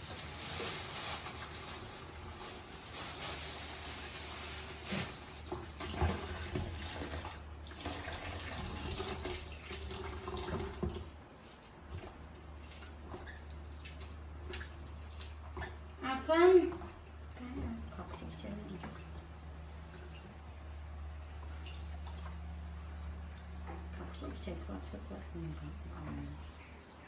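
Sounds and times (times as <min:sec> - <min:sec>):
tap water running into sink: 0:03.6 - 0:22.5.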